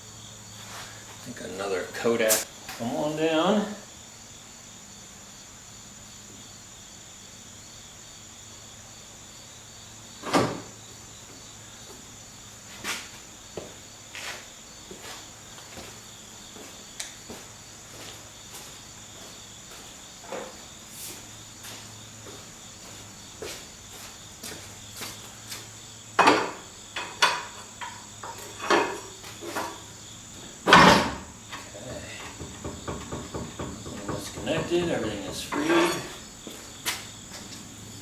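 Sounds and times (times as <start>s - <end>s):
metal knocks and clunks: 26.2s - 29.9s, 30.6s - 36.2s.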